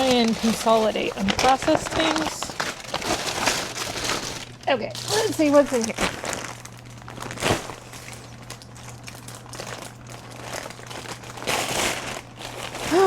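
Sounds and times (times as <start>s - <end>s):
bag crinkling and rustling: 0.0s - 13.0s.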